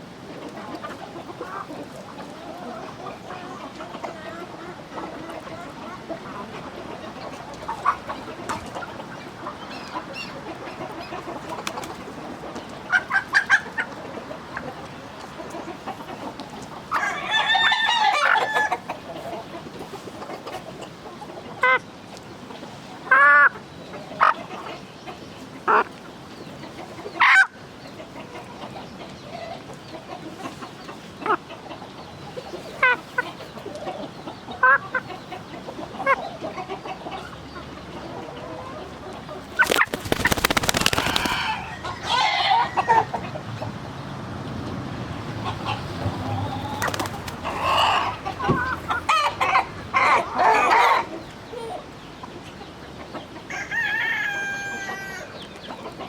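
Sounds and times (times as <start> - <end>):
chickens clucking: 0.0 - 56.0
rooster crowing: 16.9 - 18.8, 41.0 - 43.2, 53.5 - 55.4.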